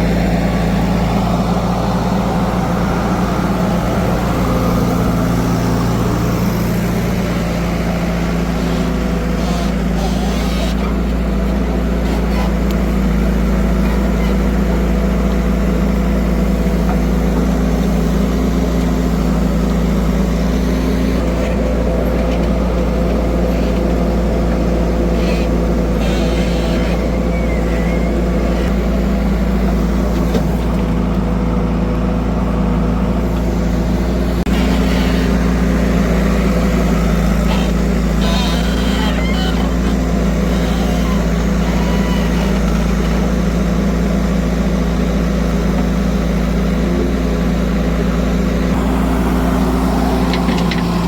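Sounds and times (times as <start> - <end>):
heavy vehicle engine running: 0.0 - 51.0.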